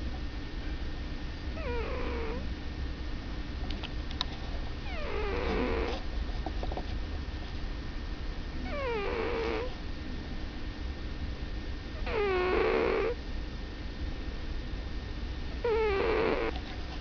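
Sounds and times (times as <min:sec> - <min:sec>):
cat snoring: 0:01.6 - 0:02.5, 0:04.8 - 0:06.0, 0:08.6 - 0:09.7, 0:12.0 - 0:13.2, 0:15.6 - 0:16.6.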